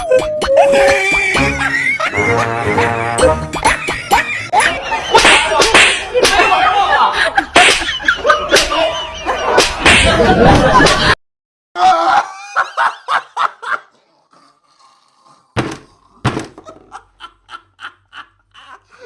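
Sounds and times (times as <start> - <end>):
cartoon laughter: 0.5 - 11.2.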